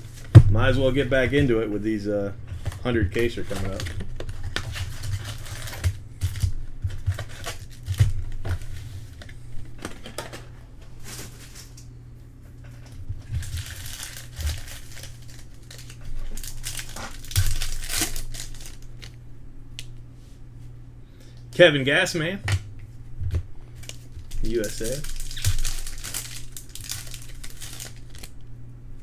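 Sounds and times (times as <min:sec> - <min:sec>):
wrappers crinkling and tearing: 0:03.1 - 0:09.3, 0:12.8 - 0:19.2, 0:23.8 - 0:28.4.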